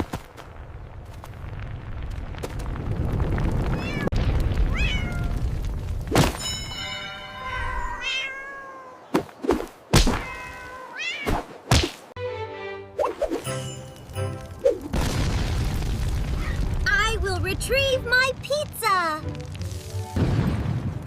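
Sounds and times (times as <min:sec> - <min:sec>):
cat meowing: 0:04.7 - 0:05.4, 0:07.4 - 0:09.1, 0:10.2 - 0:11.3.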